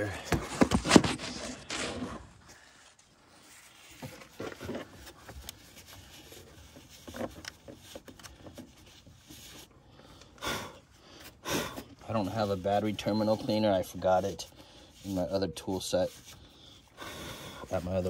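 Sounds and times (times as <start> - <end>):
paper towels rubbing: 12.2 - 16.9.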